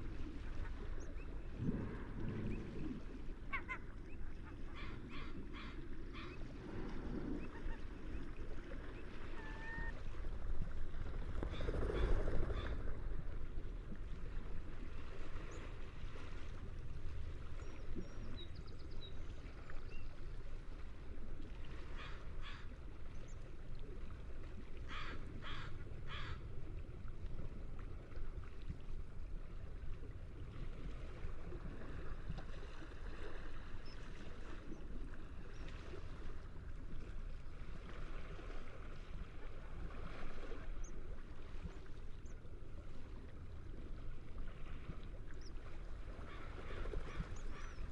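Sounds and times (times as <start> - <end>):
sea rushing: 0.0 - 18.7, 19.3 - 47.9
seagulls calling: 3.5 - 6.4, 7.4 - 8.3, 9.2 - 9.9.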